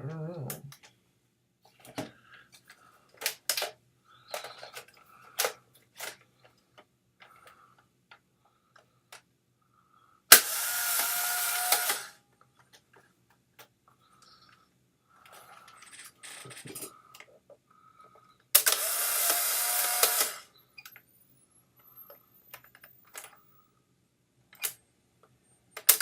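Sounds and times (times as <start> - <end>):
camera motor whirring: 10.3 - 12.2, 18.6 - 20.5
plastic camera clicks: 18.6 - 20.4
camera shutter click: 18.6 - 20.5.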